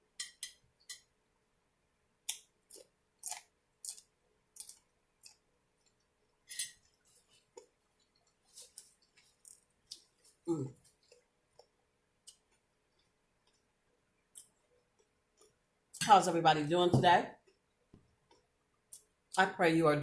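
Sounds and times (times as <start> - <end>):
crispy bacon being chewed: 2.3 - 15.6.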